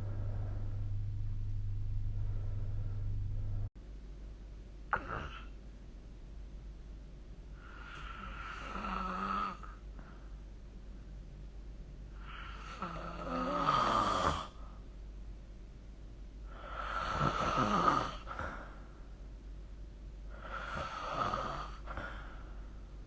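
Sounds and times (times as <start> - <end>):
person snoring: 4.9 - 5.5, 7.6 - 9.8, 12.2 - 14.6, 16.5 - 18.6, 20.3 - 22.2.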